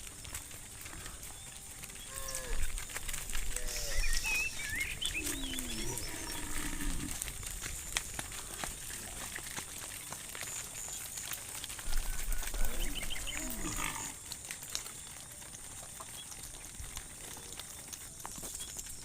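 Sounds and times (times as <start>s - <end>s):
cow mooing: 5.2s - 7.2s, 12.4s - 14.2s.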